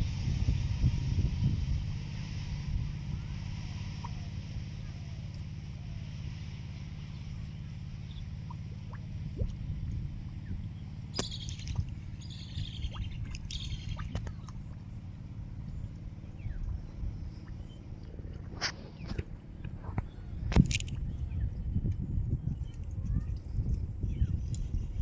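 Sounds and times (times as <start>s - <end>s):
steady low rumble: 0.0s - 25.0s
water splashing and dripping: 8.3s - 10.1s, 11.1s - 15.0s.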